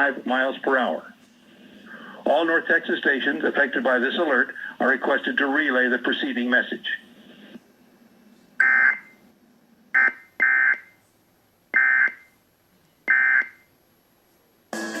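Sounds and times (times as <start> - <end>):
short electronic data bursts: 8.6 - 9.2, 10.0 - 11.0, 11.8 - 12.4, 13.1 - 13.7.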